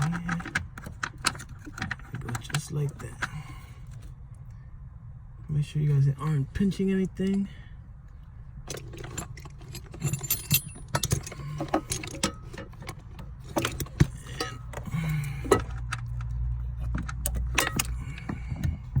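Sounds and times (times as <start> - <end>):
metal parts clicking and jingling: 0.0 - 3.4, 8.6 - 19.0
steady low hum: 0.0 - 19.0.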